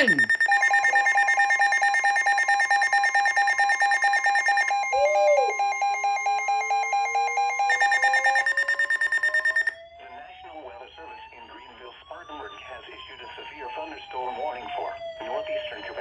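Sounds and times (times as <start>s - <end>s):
steady warning tone: 0.0s - 9.8s
electronic alarm beeping: 0.0s - 9.9s.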